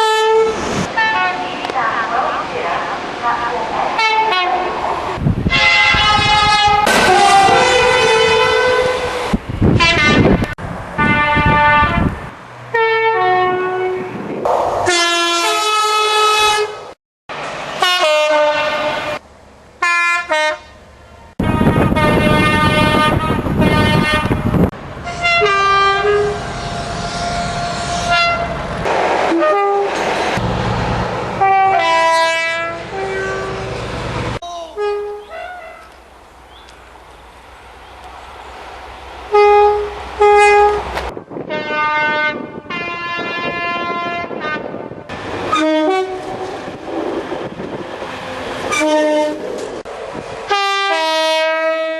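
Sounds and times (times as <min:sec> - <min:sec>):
train horn blasts: 0:00.0 - 0:01.6, 0:04.0 - 0:04.7, 0:05.5 - 0:14.2, 0:14.8 - 0:16.9, 0:17.8 - 0:19.2, 0:19.8 - 0:20.8, 0:21.4 - 0:28.6, 0:29.3 - 0:30.0, 0:31.4 - 0:33.8, 0:34.8 - 0:36.0, 0:39.3 - 0:44.9, 0:45.5 - 0:46.6, 0:48.7 - 0:49.5, 0:50.5 - 0:51.9
rumble of trains passing: 0:00.0 - 0:51.9.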